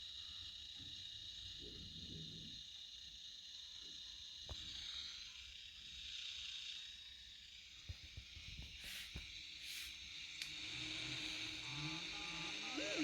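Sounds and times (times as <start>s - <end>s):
radio static hiss: 10.9s - 13.0s.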